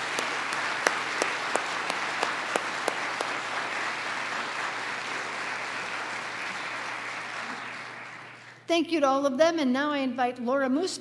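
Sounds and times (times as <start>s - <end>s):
close clapper: 0.0s - 3.8s
audience applauding: 0.0s - 8.5s.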